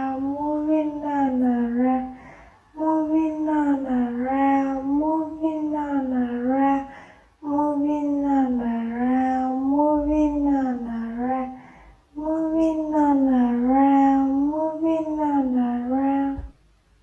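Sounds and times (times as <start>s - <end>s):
high voice singing: 0.0s - 2.2s, 2.8s - 11.6s, 12.2s - 16.6s
person breathing: 2.1s - 2.8s, 6.8s - 7.4s, 11.5s - 12.1s.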